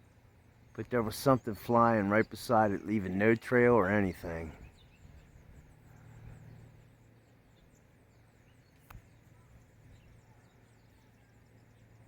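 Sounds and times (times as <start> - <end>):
low steady hum: 0.0 - 12.0
faint high chirping: 4.4 - 12.0
sharp click: 8.8 - 9.1.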